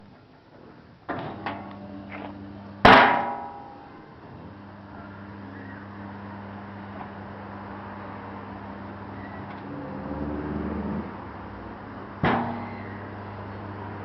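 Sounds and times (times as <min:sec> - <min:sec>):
steady low hum: 0:00.0 - 0:14.0
garbage bin being knocked: 0:02.9 - 0:03.6
loud bang with metallic ring: 0:02.9 - 0:03.8.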